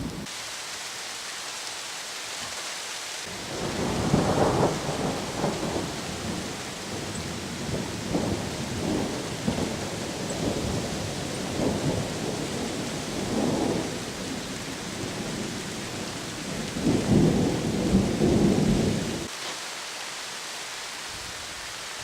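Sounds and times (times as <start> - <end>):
distant thunder rumbling: 0.0 - 0.3, 3.3 - 19.3
rain hissing: 0.0 - 22.0.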